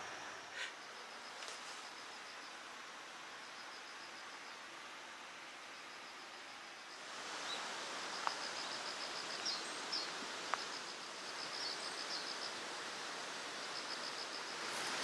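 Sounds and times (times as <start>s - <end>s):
background hiss: 0.0s - 15.0s
insect chirping in pulses: 5.7s - 15.0s
faint ticks: 8.2s - 8.5s, 10.4s - 10.7s.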